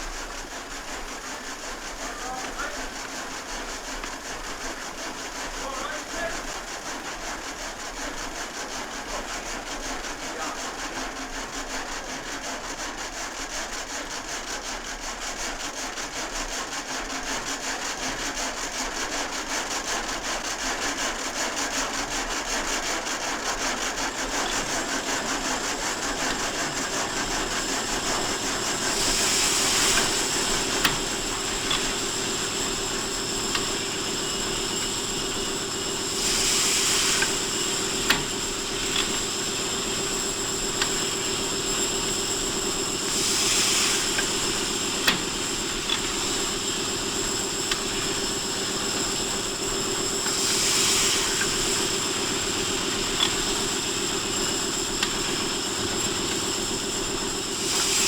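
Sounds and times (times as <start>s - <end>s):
machinery running with fast beat: 18.0s - 58.0s
bursts of hiss: 24.0s - 58.0s.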